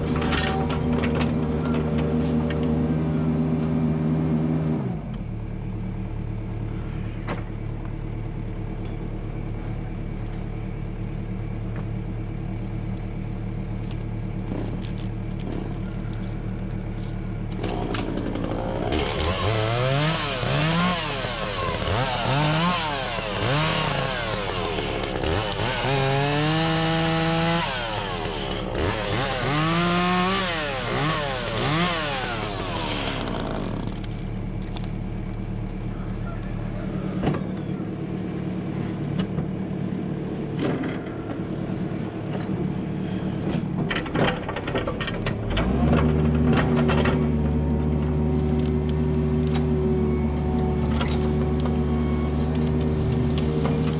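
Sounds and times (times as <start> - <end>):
chainsaw revving: 17.6 - 34.2, 45.5 - 53.9.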